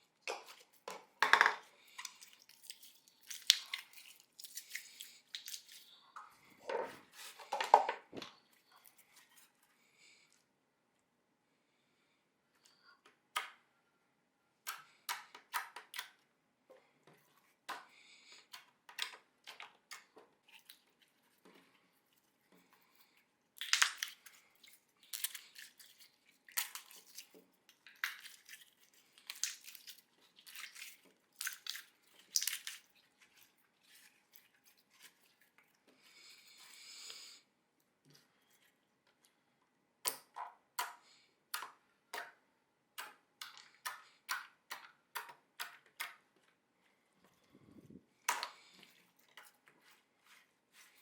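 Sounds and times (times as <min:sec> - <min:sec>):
slime wet pops and crackles: 0:01.9 - 0:05.8, 0:23.6 - 0:33.2, 0:40.0 - 0:46.3.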